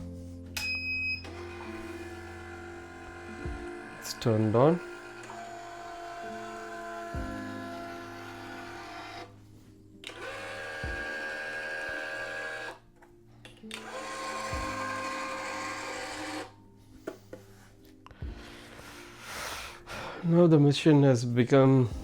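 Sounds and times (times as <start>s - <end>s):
tension head motor running: 1.2s - 9.3s, 10.0s - 12.8s, 13.7s - 16.5s.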